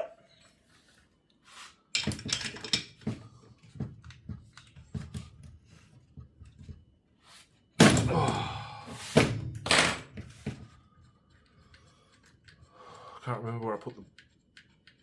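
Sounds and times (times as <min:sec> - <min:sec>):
metal parts clicking and knocking: 0:01.9 - 0:03.2.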